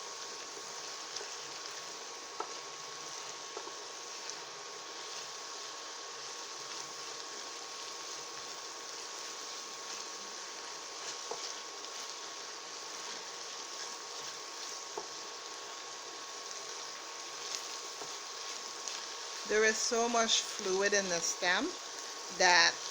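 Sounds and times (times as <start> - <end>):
vegetables sizzling in oil: 0.0 - 22.9.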